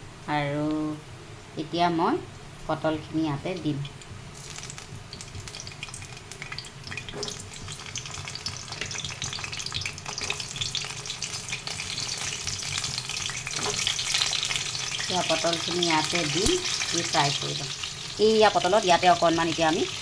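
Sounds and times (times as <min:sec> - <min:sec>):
vegetables sizzling in hot oil: 0:02.6 - 0:20.0.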